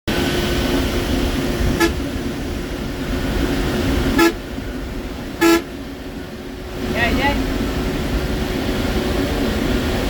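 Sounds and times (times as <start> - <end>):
diesel engine running: 0.1 - 10.0
horn tooting: 1.7 - 2.1, 4.1 - 4.5, 5.4 - 5.8.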